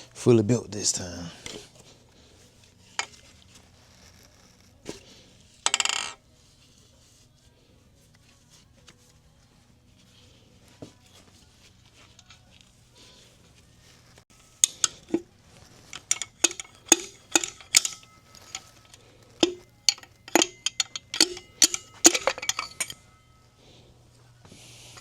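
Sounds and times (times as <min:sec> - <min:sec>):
small metal parts clinking: 0:03.0 - 0:03.3, 0:05.6 - 0:06.2, 0:14.3 - 0:23.8.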